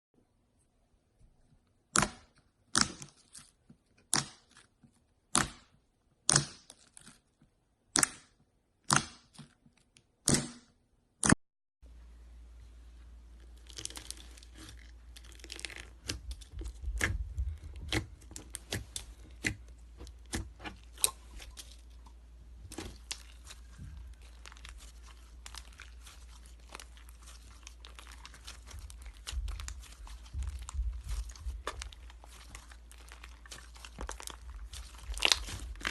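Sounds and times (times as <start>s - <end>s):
slime crackling and crinkling: 2.0s - 5.1s, 13.2s - 35.9s
slime popping: 13.6s - 35.9s.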